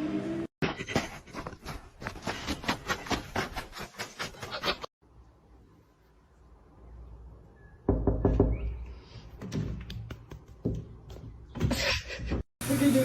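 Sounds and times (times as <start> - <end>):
irregular knocks and thumps: 7.9 - 12.5.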